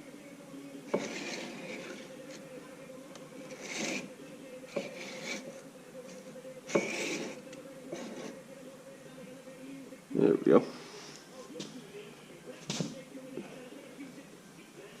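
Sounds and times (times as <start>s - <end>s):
faint steady hum: 0.0s - 15.0s
scraping and rubbing: 0.9s - 2.5s, 3.4s - 5.6s, 6.7s - 8.4s.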